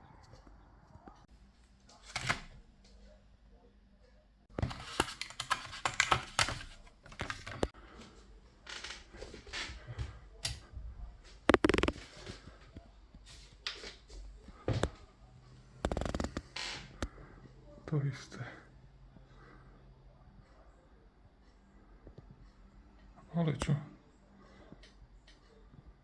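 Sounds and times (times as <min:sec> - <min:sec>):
plastic computer parts clattering: 0:04.5 - 0:07.8.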